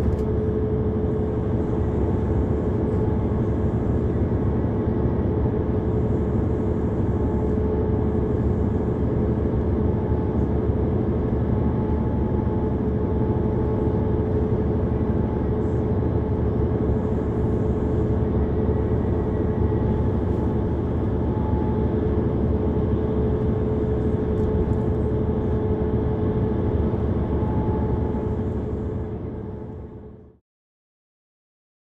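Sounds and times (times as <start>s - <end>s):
bus engine hum: 0.0s - 30.4s.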